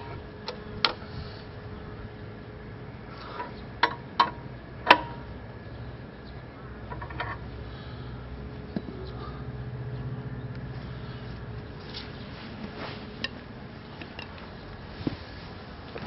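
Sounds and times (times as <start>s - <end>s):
faint hum: 0.0s - 16.0s
knocks and clicks of parts: 3.4s - 5.2s.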